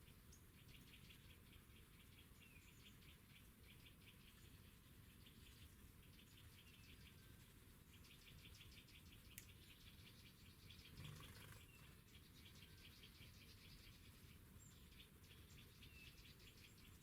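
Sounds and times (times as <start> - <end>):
faint rapid chirping: 10.6 - 12.4.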